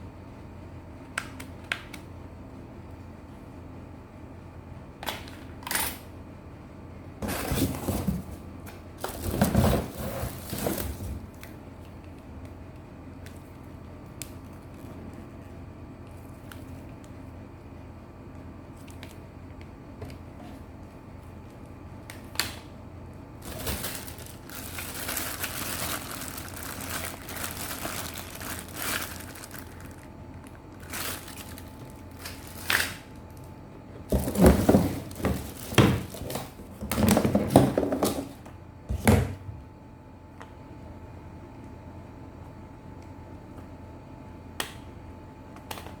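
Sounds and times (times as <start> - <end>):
crinkling and rustling: 7.2 - 12.2, 23.4 - 38.4.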